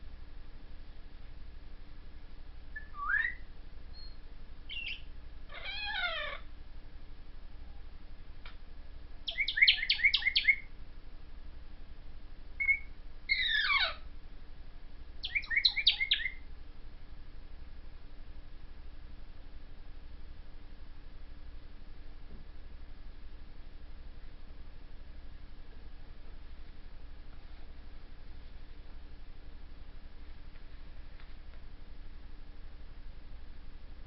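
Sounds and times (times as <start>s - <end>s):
parrot chirping: 2.8s - 3.4s, 4.0s - 6.5s, 9.3s - 10.7s, 12.6s - 14.0s, 15.2s - 16.4s
parrot whistling: 2.8s - 3.4s, 4.7s - 6.4s, 9.3s - 10.7s, 12.6s - 14.0s, 15.2s - 16.4s.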